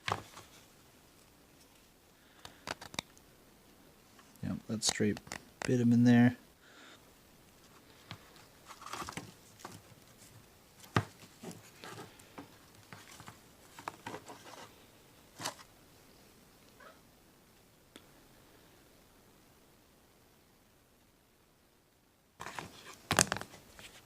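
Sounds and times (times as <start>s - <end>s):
taps crinkles and clicks: 2.4s - 3.2s, 4.8s - 5.8s.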